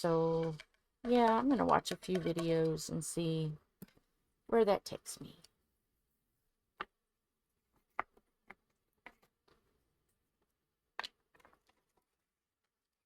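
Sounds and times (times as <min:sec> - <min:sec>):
small items clicking on a surface: 0:00.0 - 0:03.2, 0:07.8 - 0:09.8, 0:10.4 - 0:12.2.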